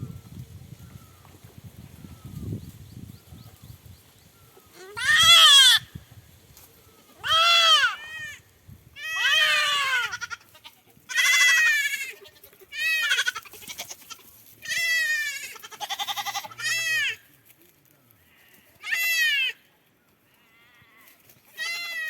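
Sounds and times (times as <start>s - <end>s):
goats bleating: 4.7s - 5.9s, 7.2s - 8.4s, 9.0s - 17.3s, 18.3s - 19.6s, 20.9s - 22.0s.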